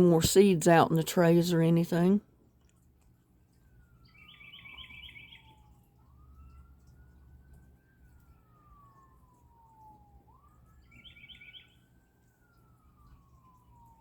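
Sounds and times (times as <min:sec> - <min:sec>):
distant emergency siren wailing: 0:00.0 - 0:14.0
bird chirping: 0:04.0 - 0:05.6, 0:10.8 - 0:11.9.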